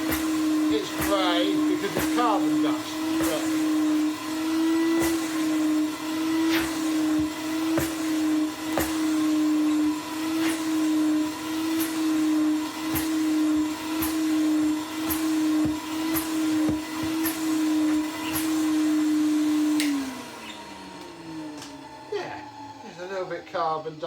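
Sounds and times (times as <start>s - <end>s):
vacuum nozzle clicks: 0.0s - 4.1s, 11.8s - 12.0s, 12.9s - 13.2s, 19.8s - 21.8s
vacuum cleaner motor whine: 0.0s - 24.0s.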